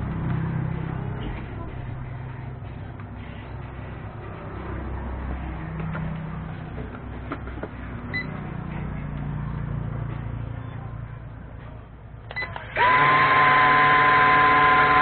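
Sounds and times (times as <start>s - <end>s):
drone motors whining: 12.4s - 15.0s.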